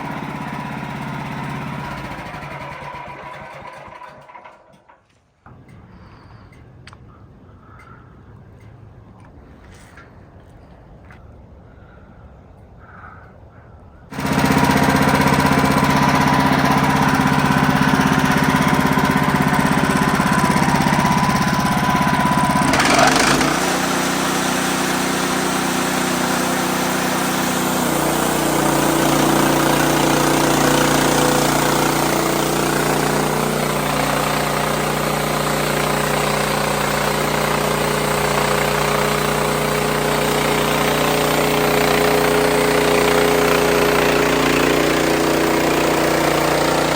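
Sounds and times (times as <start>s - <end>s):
band sawmill engine running: 0.0s - 6.7s, 14.1s - 46.9s
band blade cutting log: 22.6s - 46.2s.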